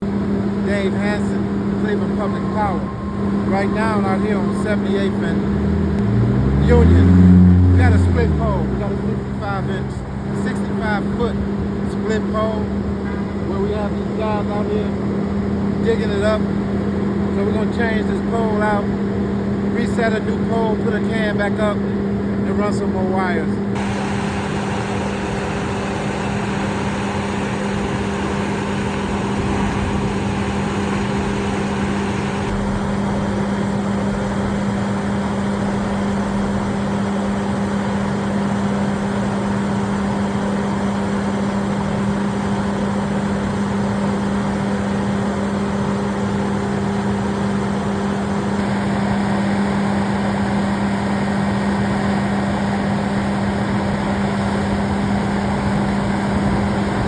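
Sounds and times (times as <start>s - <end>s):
truck engine drone: 0.0s - 19.6s, 23.6s - 42.4s.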